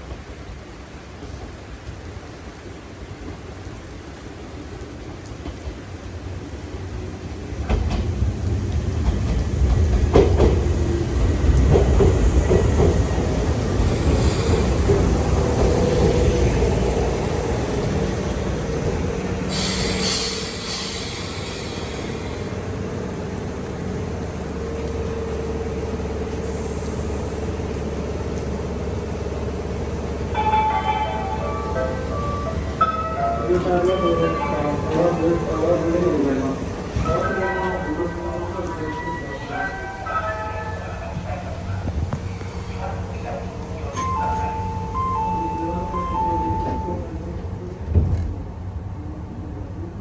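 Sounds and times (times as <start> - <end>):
electric train rumble: 0.0 - 50.0
brief hiss: 19.5 - 22.5.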